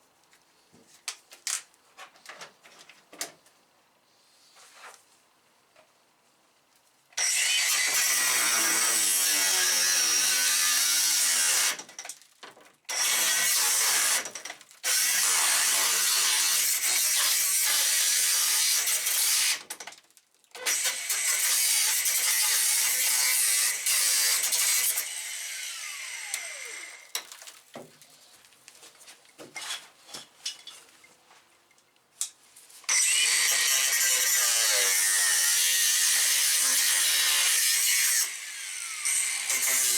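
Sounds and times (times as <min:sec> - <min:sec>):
power tool cutting steel: 0:07.2 - 0:11.8, 0:12.9 - 0:19.7, 0:20.6 - 0:27.1, 0:32.9 - 0:39.9.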